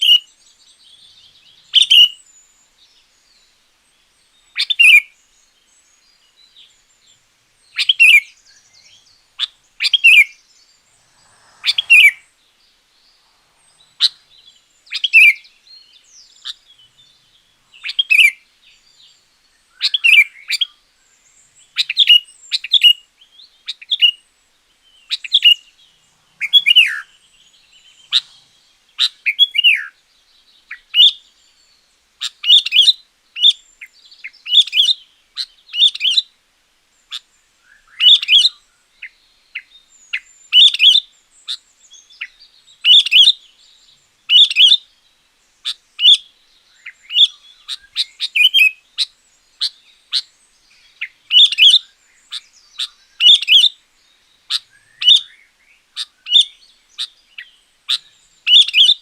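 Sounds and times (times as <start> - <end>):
bird singing whistled phrases: 0.0 - 2.6, 13.6 - 18.4, 26.4 - 30.0, 37.6 - 43.4, 44.3 - 44.9, 45.6 - 53.8, 54.5 - 59.0.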